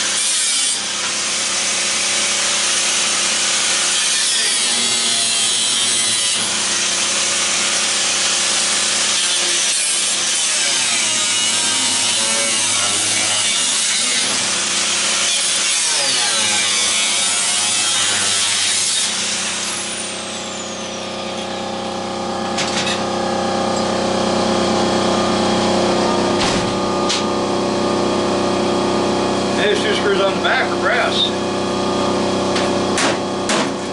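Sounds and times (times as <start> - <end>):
power tool grinding metal: 0.0 - 33.9
steady hum: 20.1 - 33.9.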